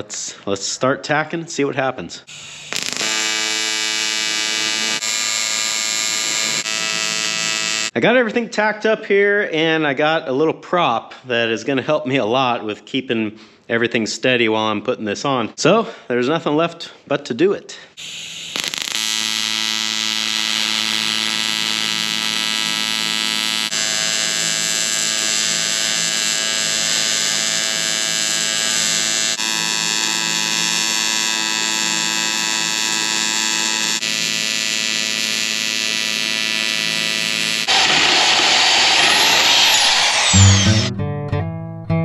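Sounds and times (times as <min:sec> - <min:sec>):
welding arc buzzing: 0:02.3 - 0:07.9, 0:18.0 - 0:40.9.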